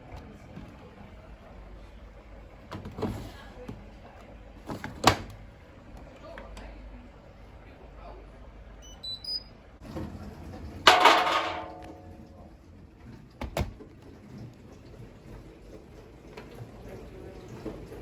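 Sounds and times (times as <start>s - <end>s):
washing machine clunk with metallic ring: 10.8s - 12.3s.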